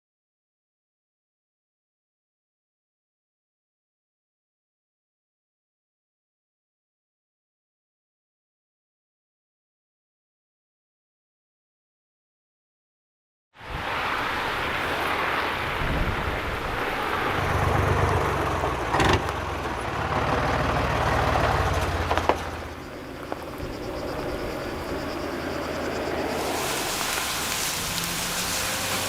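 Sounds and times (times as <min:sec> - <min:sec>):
outdoor noise hiss: 0:13.6 - 0:19.4, 0:21.4 - 0:29.0
vehicle engine running: 0:16.6 - 0:29.0.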